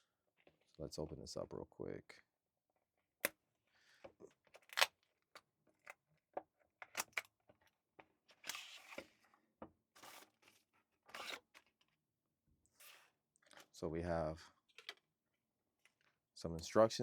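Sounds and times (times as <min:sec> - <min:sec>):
packaging rustling and tearing: 0:04.6 - 0:04.9.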